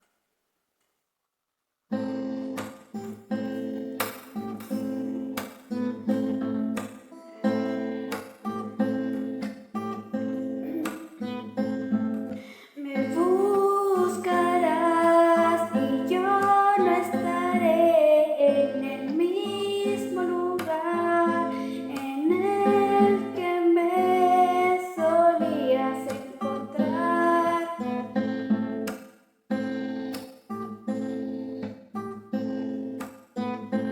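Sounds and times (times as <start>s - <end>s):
acoustic guitar strumming: 1.9s - 33.9s
woman singing: 12.8s - 28.1s.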